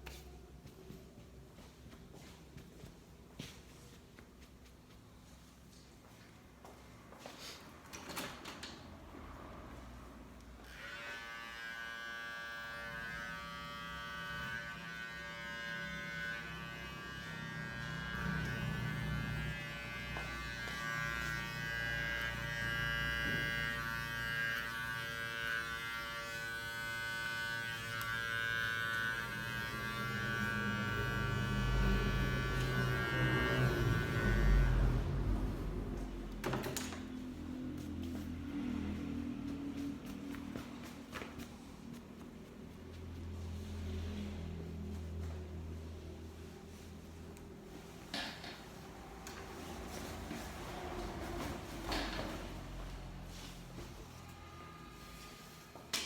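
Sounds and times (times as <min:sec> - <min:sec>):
electric hair clipper buzzing: 0:10.6 - 0:34.9.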